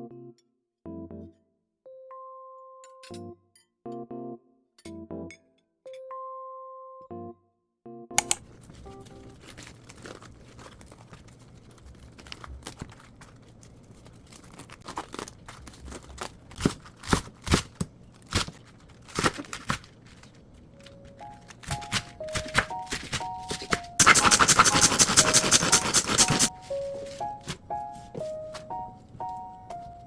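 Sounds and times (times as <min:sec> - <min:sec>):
rustling and crinkling: 0:08.4 - 0:30.0
sharp knocks and crunches: 0:14.6 - 0:20.4, 0:21.6 - 0:24.5.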